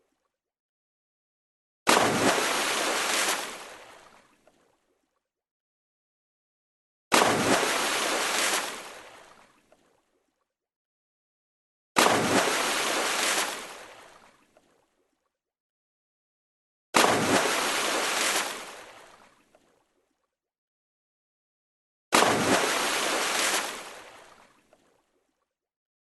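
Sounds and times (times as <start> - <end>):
water splash and spray: 1.9 - 4.8, 7.1 - 10.0, 12.0 - 14.9, 17.0 - 19.9, 22.1 - 25.2.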